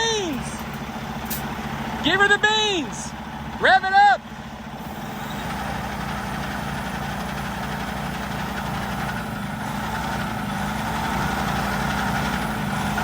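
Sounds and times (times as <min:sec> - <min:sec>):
vehicle engine revving under load: 0:04.6 - 0:13.0.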